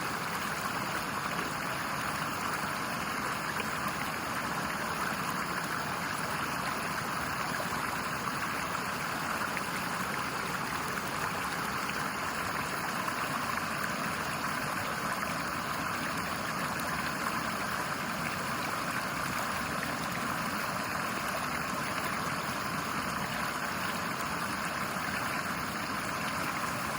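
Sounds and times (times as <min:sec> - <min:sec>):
stream water flowing: 0:00.0 - 0:26.9.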